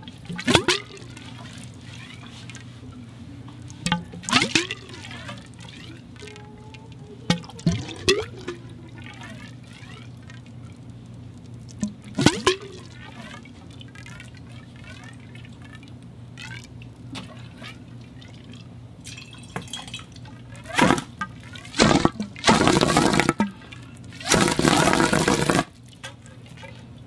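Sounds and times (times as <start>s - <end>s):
water dripping and gurgling: 0.0s - 27.0s
loud water gushes: 20.6s - 25.8s.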